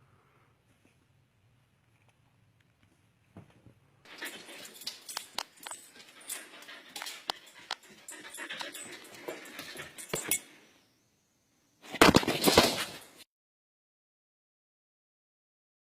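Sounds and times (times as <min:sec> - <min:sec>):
sharp clicks and scuffs: 0:01.8 - 0:10.5
dog panting: 0:04.1 - 0:10.5
loud noisy rustling: 0:11.9 - 0:13.2.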